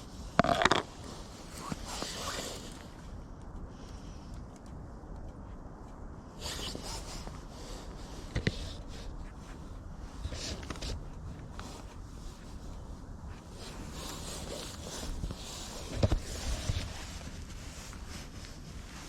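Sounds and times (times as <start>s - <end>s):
scraping and rustling handling: 6.4s - 19.0s.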